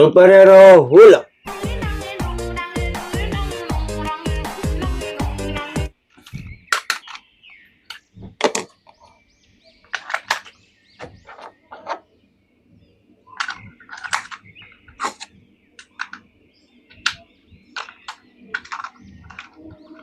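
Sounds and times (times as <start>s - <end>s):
background music: 1.5s - 5.9s
plastic packaging clicks and rattles: 6.2s - 7.2s, 9.9s - 12.0s, 13.4s - 16.2s, 16.9s - 20.0s.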